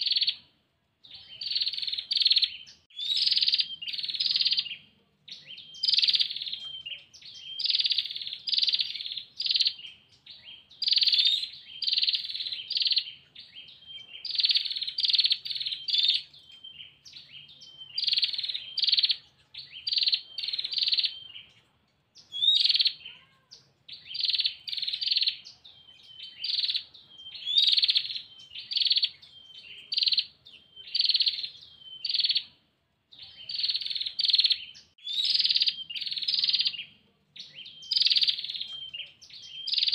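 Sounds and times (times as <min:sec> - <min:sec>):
bird calling harsh notes: 0:01.3 - 0:21.5, 0:33.4 - 0:39.9.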